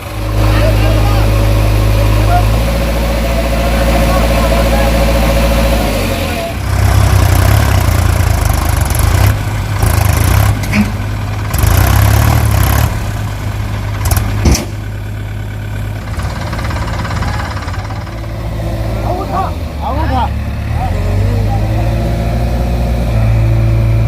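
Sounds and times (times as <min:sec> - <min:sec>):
heavy diesel engine working: 0:00.0 - 0:24.0.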